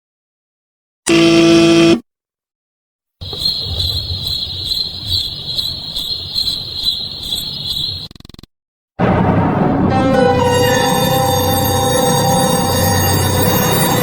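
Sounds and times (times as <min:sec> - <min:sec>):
crickets chirping: 0:03.2 - 0:08.2.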